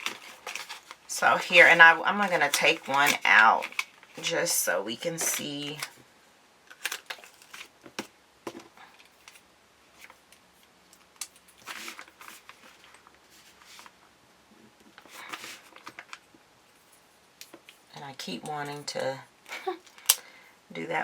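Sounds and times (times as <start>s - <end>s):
paper rustling: 0.0s - 4.3s, 11.3s - 14.0s, 14.9s - 17.8s.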